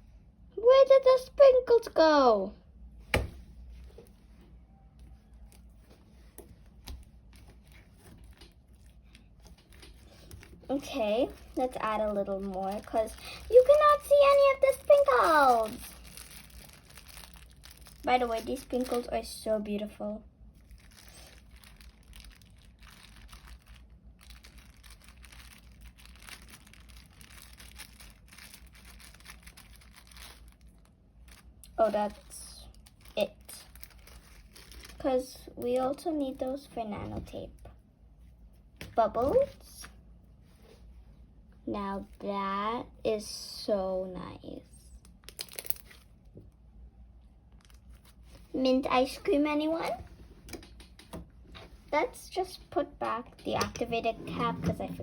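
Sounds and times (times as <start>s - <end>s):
sticky slime crackling: 6.7s - 19.5s, 20.6s - 36.7s, 45.0s - 46.1s.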